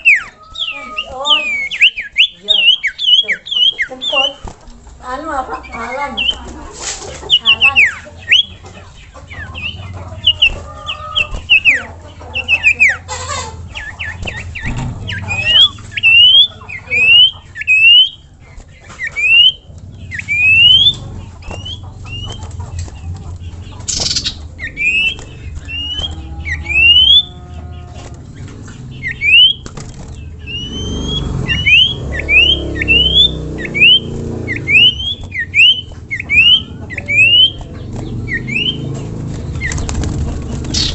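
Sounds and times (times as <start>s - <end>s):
bird whistling rising notes: 0.0s - 4.4s, 7.3s - 8.6s, 13.7s - 18.3s, 18.9s - 22.6s, 23.9s - 38.9s.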